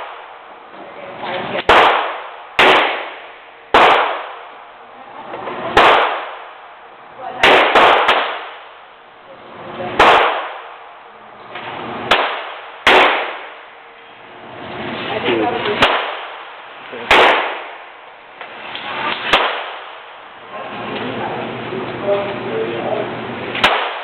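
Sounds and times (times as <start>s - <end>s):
pistol shots: 1.6s - 4.6s, 5.7s - 6.7s, 7.4s - 8.9s, 10.0s - 11.0s, 12.0s - 13.7s, 15.8s - 18.0s, 19.1s - 20.2s, 23.6s - 24.0s.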